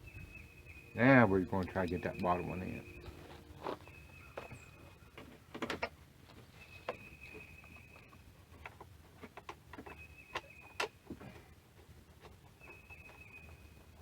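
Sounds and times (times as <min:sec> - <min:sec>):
thin high steady tone: 0:00.7 - 0:03.4
hand tools tapping on metal and plastic: 0:05.2 - 0:06.0.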